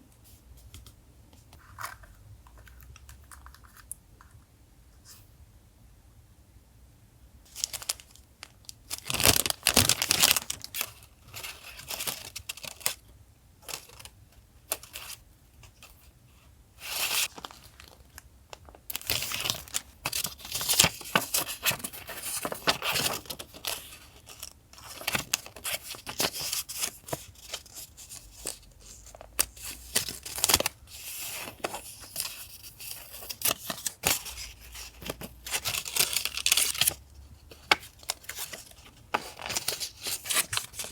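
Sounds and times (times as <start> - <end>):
paper rustling: 16.8 - 40.9.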